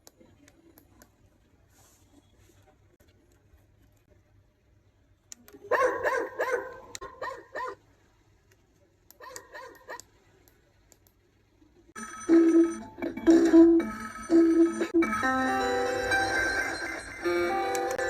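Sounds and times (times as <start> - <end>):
click: 5.3 - 5.6, 8.5 - 11.2
dog barking: 5.7 - 7.8, 9.2 - 10.1.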